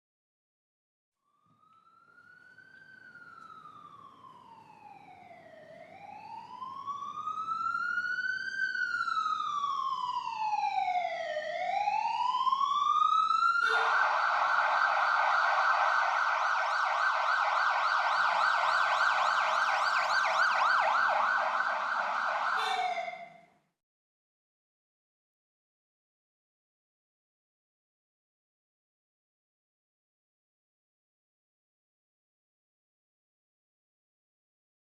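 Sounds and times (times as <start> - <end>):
ambulance siren: 1.2 - 23.6.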